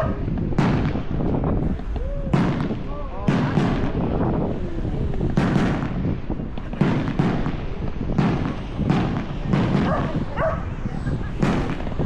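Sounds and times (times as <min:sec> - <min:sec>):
continuous low rumble: 0:00.0 - 0:12.0
fireworks bangs: 0:00.0 - 0:12.0.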